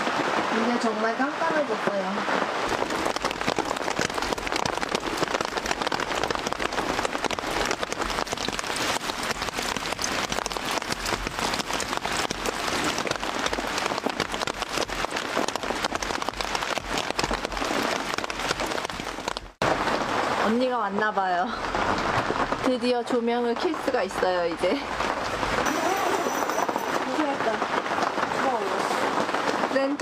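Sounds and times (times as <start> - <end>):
heavy rain falling: 0.0 - 30.0.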